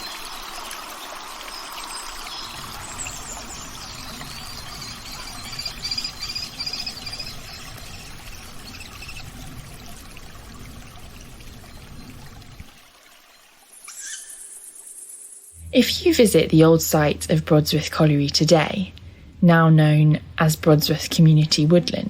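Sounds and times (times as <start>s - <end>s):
water trickling: 0.0s - 19.4s
songbird singing: 1.5s - 9.6s, 13.8s - 18.4s.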